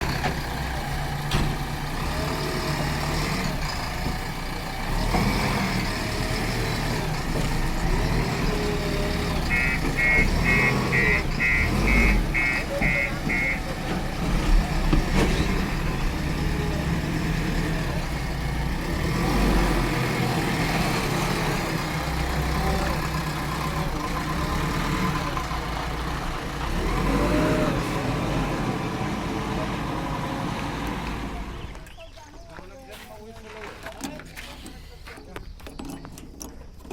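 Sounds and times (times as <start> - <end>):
heavy diesel engines running: 0.0 - 36.9
short high beeps: 9.5 - 13.6.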